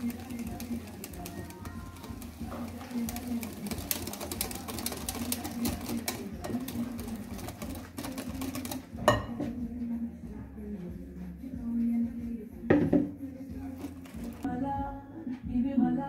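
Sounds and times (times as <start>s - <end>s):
whisk scraping a bowl: 0.0s - 9.2s, 13.6s - 14.5s
knock on a bowl: 12.7s - 13.2s.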